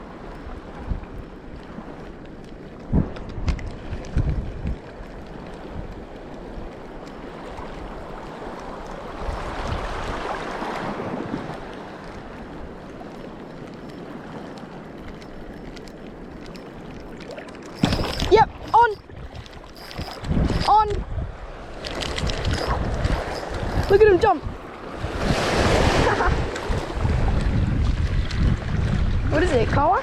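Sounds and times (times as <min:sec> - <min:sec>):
sea water washing: 0:00.0 - 0:30.0
wind buffeting microphone: 0:00.0 - 0:30.0
rush of water: 0:06.6 - 0:15.8, 0:16.9 - 0:30.0.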